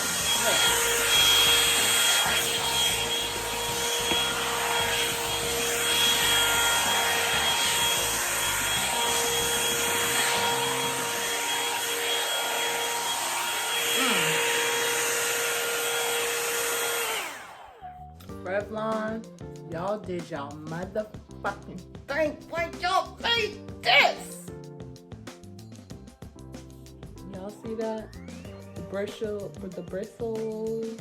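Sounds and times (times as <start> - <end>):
hair dryer brush running: 0.0 - 18.0.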